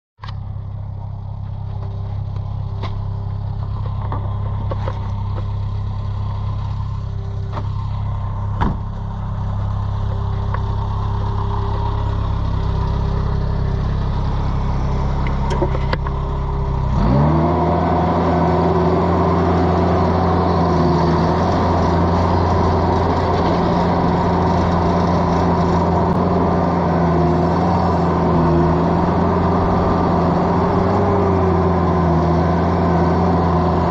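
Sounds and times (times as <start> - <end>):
small engine running: 1.1 - 33.9
clunks: 8.5 - 9.1, 15.2 - 16.2.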